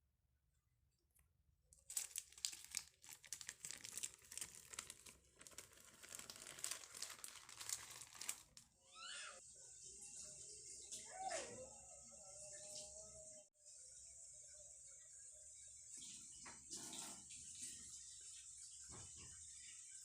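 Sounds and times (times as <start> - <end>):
paper or plastic crinkling: 1.8 - 8.7.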